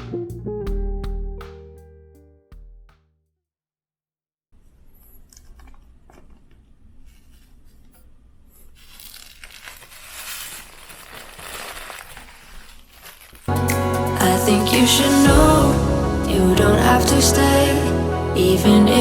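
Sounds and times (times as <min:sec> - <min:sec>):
crinkling and tearing: 0:08.6 - 0:13.8.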